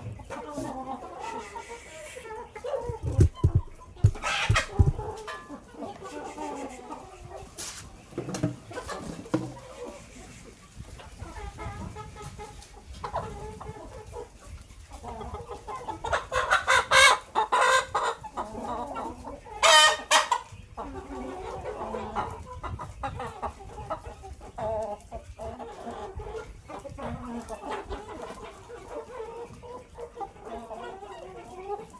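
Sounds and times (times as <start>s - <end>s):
chickens clucking: 0.0s - 31.9s
loud high chicken calls: 0.6s - 5.4s, 16.0s - 18.9s, 19.6s - 22.8s.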